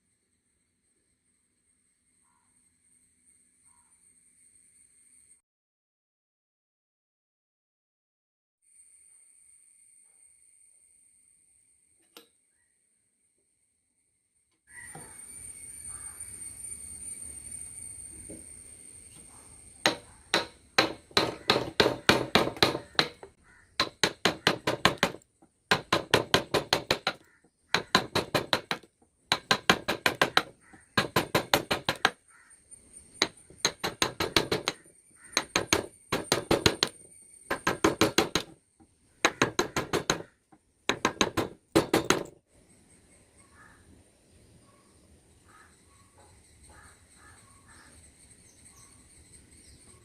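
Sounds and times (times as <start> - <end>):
hammer tapping chisel into wood: 19.9 - 32.2, 33.2 - 38.6, 39.2 - 40.3, 40.9 - 42.3.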